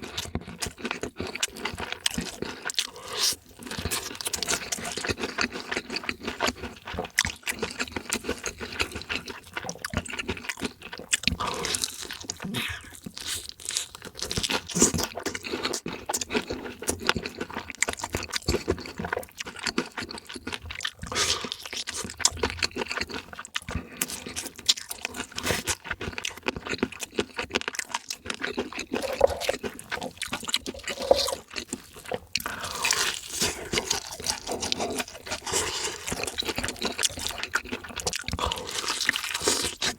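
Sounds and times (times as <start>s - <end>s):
crunching and chewing food: 0.0s - 39.9s
wet mouth smacking: 29.0s - 29.6s.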